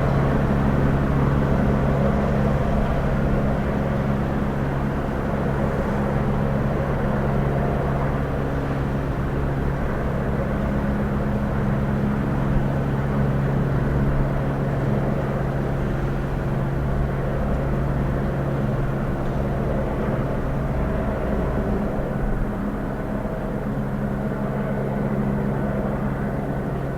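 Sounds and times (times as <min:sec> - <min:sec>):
helicopter hovering: 0:16.6 - 0:26.9.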